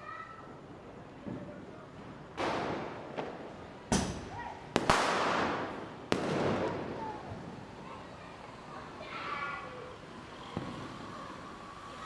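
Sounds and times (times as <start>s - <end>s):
firecrackers banging: 4.8s - 7.6s.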